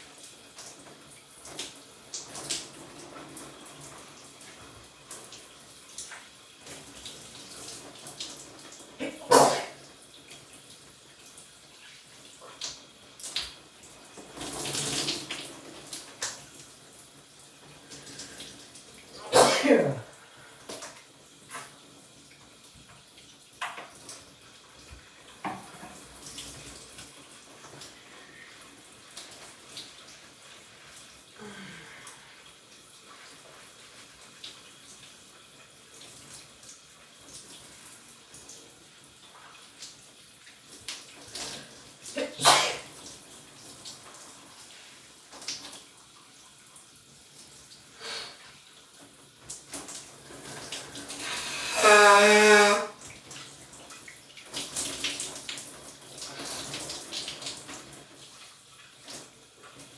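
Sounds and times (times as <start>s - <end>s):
person sneezing: 9.0s - 9.8s, 19.2s - 20.1s, 42.1s - 42.9s
shower water spraying: 40.6s - 45.8s, 49.4s - 53.4s.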